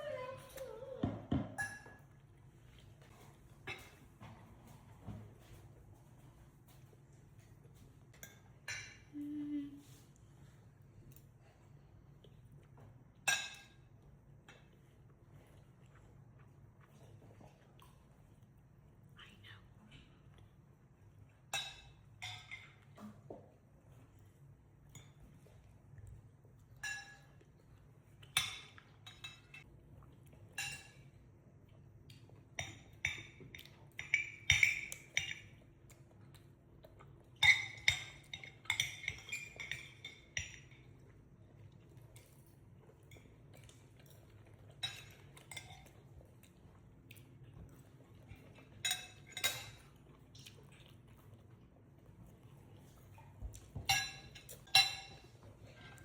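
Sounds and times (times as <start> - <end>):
cutlery clinking on plates: 1.3 - 2.1, 13.2 - 13.9, 26.8 - 27.4, 30.5 - 31.1, 37.4 - 40.9, 48.4 - 50.0, 53.5 - 56.0.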